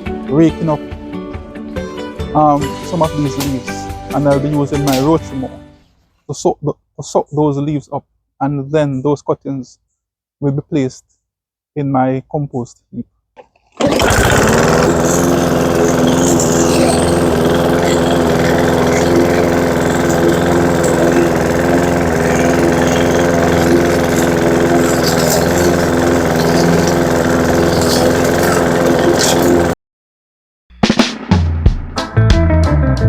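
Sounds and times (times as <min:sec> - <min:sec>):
lawn mower engine running: 0:02.4 - 0:05.5, 0:13.5 - 0:29.8.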